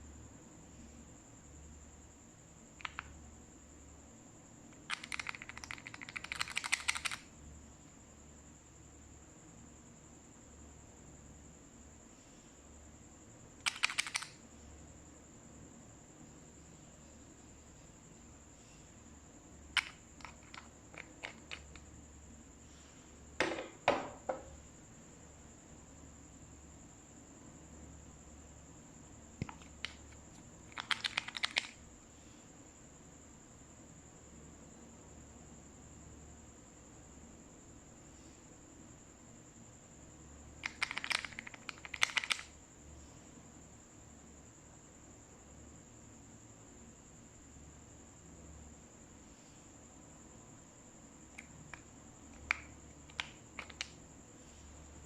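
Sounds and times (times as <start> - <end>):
small clicks and pops: 2.8 - 3.2, 4.8 - 7.3, 13.6 - 14.4, 19.7 - 21.9, 29.4 - 31.8, 40.6 - 42.6, 51.3 - 54.0
louder pops or knocks: 23.4 - 24.5.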